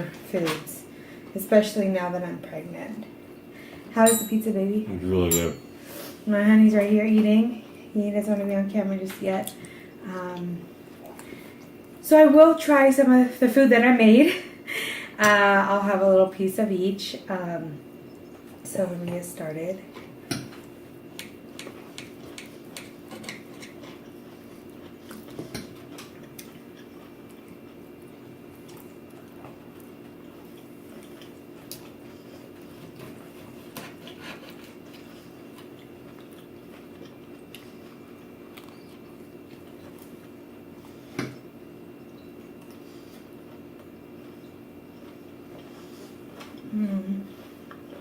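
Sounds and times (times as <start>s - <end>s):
steady low hum: 0.0s - 48.0s
chewing: 19.9s - 48.0s.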